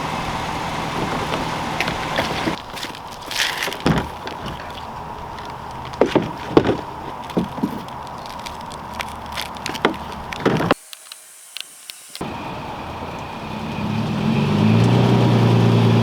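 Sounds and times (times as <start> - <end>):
vehicle engine stopping: 0.0 - 2.6, 12.1 - 16.0
sharp knocks and clunks: 0.6 - 2.9, 3.6 - 4.9, 5.9 - 8.0, 9.6 - 10.8.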